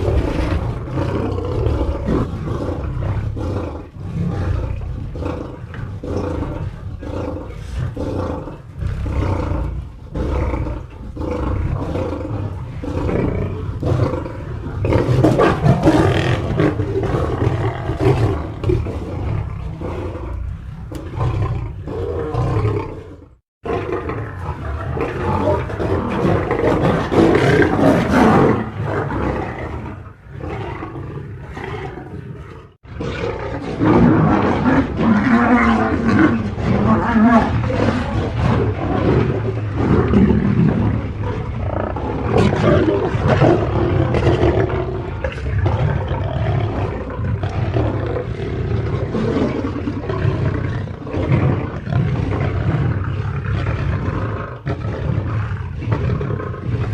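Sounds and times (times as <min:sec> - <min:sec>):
lion growls and roars: 0:00.0 - 0:56.9.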